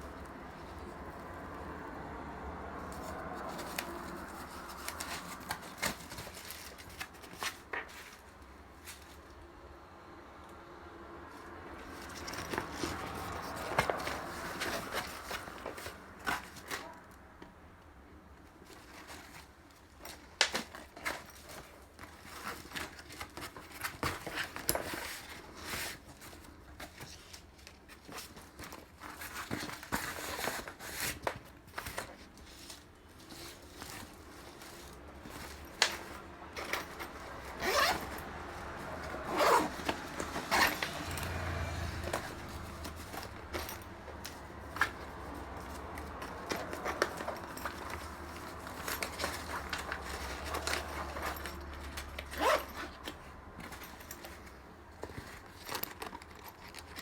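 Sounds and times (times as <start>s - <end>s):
bag rustling: 2.8s - 9.3s, 11.8s - 17.0s, 18.6s - 57.0s
backpack zipper being pulled: 36.9s - 38.3s, 39.0s - 42.3s, 52.3s - 53.0s.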